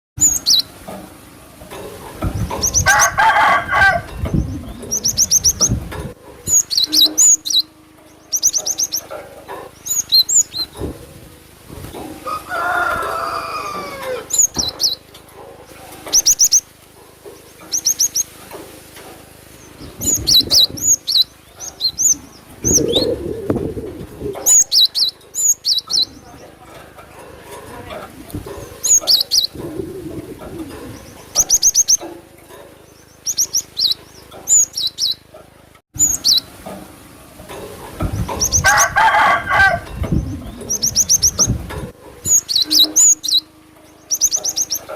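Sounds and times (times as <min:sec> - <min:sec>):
rooster crowing: 0:02.8 - 0:04.2, 0:12.1 - 0:14.4, 0:38.6 - 0:40.0
bird chirping sharply: 0:06.5 - 0:09.1.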